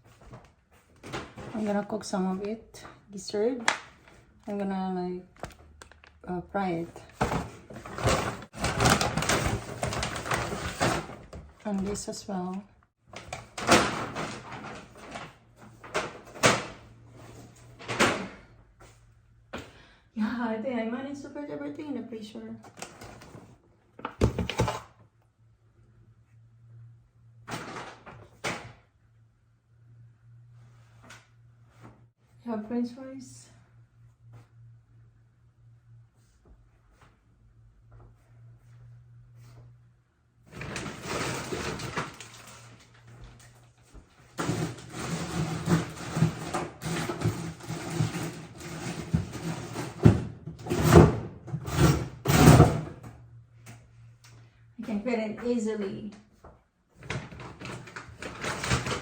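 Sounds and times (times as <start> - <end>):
plastic packaging rustling: 5.3 - 6.3, 7.4 - 11.1, 40.6 - 45.8, 57.0 - 59.0
freezer door and drawers shutting: 7.2 - 11.3, 13.2 - 16.8, 40.5 - 42.7, 44.4 - 53.0.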